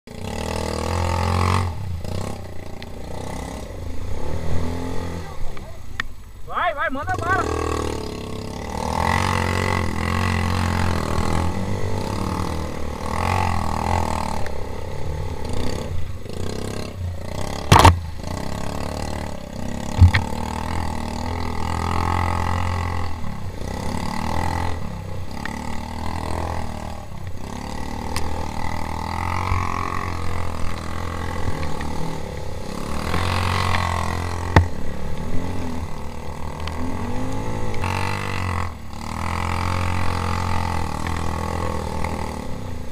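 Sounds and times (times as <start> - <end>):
quad bike engine revving: 0.1 - 42.9
sharp knocks: 19.9 - 20.4, 34.4 - 34.8.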